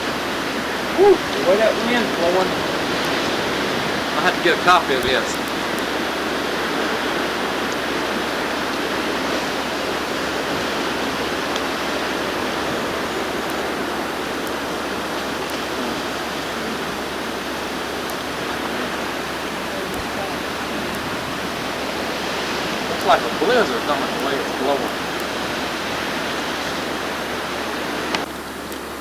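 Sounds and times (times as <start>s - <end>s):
wind rushing in snowstorm: 0.0s - 29.0s.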